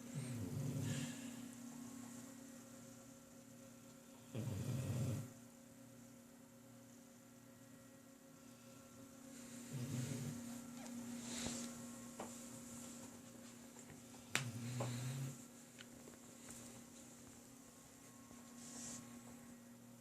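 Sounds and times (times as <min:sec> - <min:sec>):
soft slow snoring: 0:00.0 - 0:01.4, 0:04.1 - 0:05.4, 0:09.4 - 0:10.6, 0:14.3 - 0:15.5
steady electrical hum: 0:00.0 - 0:20.0.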